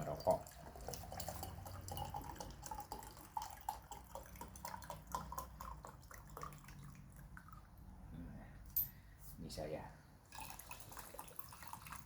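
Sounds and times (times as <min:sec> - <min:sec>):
liquid dripping into glass: 0:00.0 - 0:07.9.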